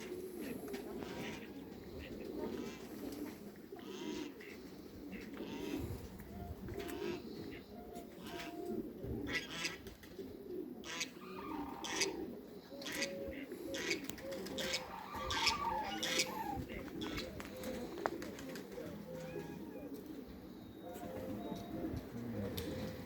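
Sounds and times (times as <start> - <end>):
poultry cooing: 0.0 - 23.0
sharp poultry calls: 1.0 - 2.9, 3.8 - 8.6, 9.2 - 9.9, 10.8 - 17.4.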